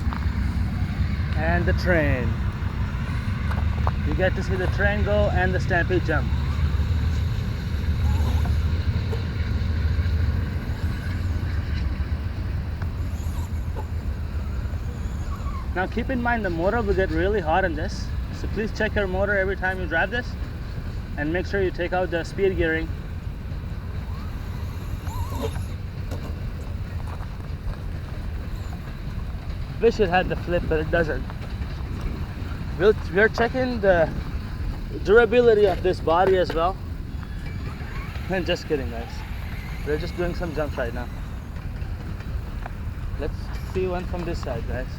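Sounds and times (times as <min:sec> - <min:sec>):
train rumbling: 0:00.0 - 0:44.9
electric motor whining: 0:23.8 - 0:26.6, 0:32.0 - 0:44.4.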